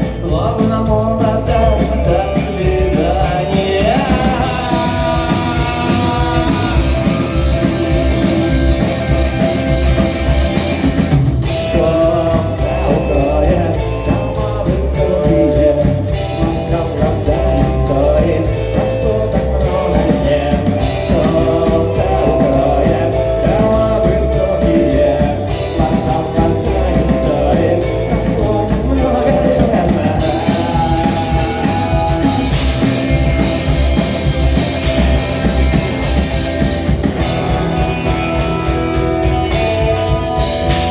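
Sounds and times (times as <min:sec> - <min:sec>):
person singing: 0:00.0 - 0:10.0, 0:10.9 - 0:33.4
rock band playing: 0:00.0 - 0:40.9.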